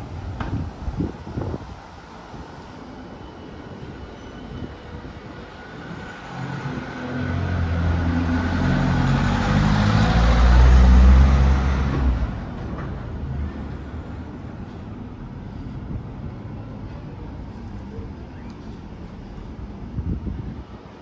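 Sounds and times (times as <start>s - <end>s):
vehicle driving past: 6.4s - 12.5s.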